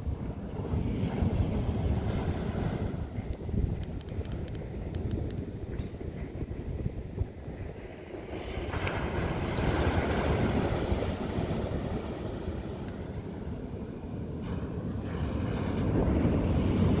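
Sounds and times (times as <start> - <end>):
wind buffeting microphone: 0.0 - 17.0
sea waves breaking: 7.8 - 17.0.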